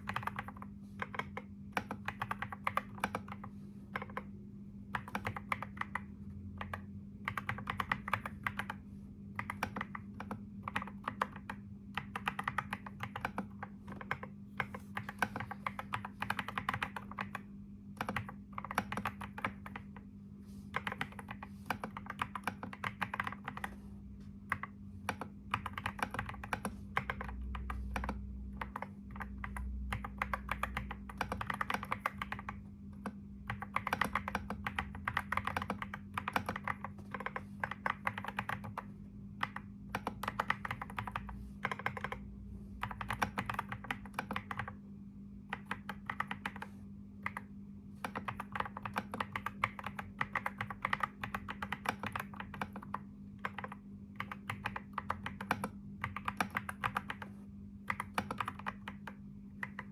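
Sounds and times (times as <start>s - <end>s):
steady low hum: 0.0s - 59.9s
keyboard key clicks: 45.5s - 57.3s, 57.9s - 59.9s.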